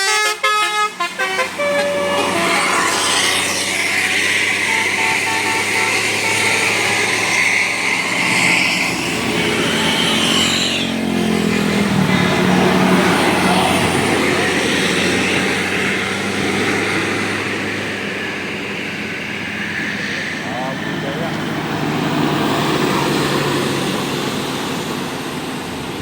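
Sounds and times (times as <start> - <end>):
heavy vehicle driving past: 1.4 - 26.0.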